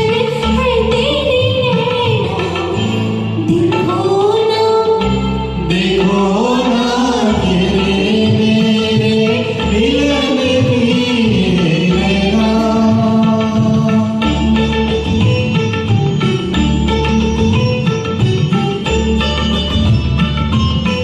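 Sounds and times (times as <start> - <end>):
instrumental backing track: 0.0 - 21.0
person singing: 3.4 - 14.5.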